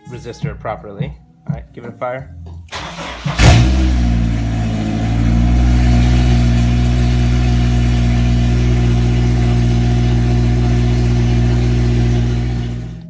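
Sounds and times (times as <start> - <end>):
car engine starting and idling: 2.7 - 13.0.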